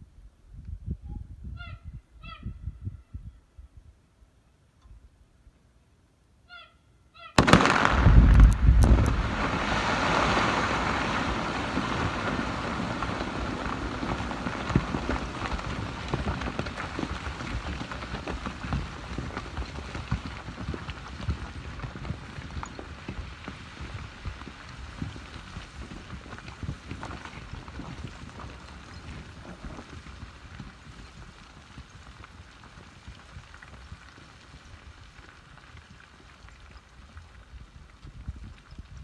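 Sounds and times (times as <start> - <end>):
rock and gravel tumbling: 7.4 - 39.0
low rumble: 7.6 - 14.0.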